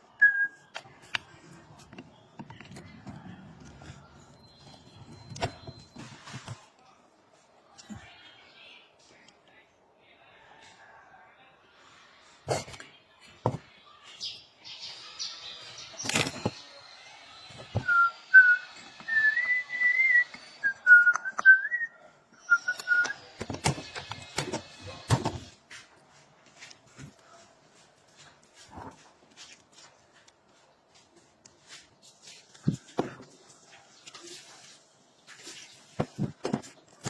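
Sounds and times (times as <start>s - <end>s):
person whistling a tune: 17.8s - 21.9s.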